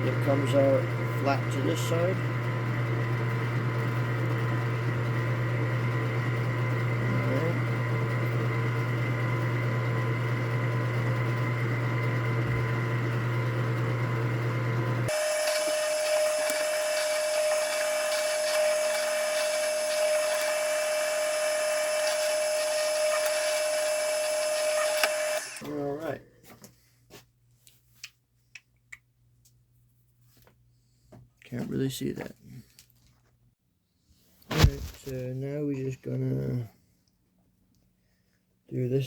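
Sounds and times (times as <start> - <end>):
electric drill running: 0.2 - 25.7.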